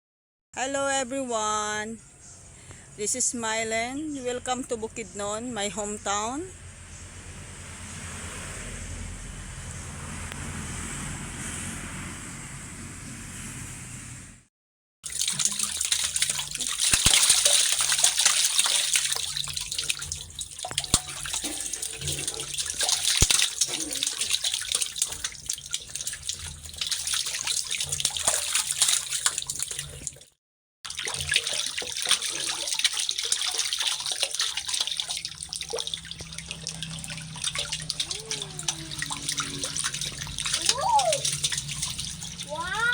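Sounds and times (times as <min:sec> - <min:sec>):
running splashing water: 0:15.0 - 0:30.3, 0:30.9 - 0:42.9.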